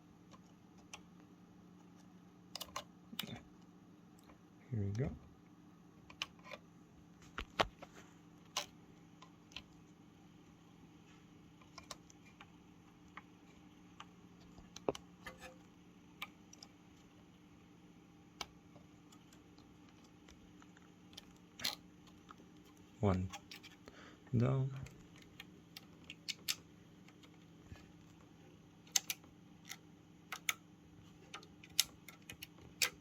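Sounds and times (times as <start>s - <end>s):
faint steady hum: 0.0s - 33.0s
plastic parts clicking: 2.6s - 3.3s, 11.6s - 12.4s, 21.1s - 23.9s, 24.8s - 27.9s, 28.9s - 33.0s.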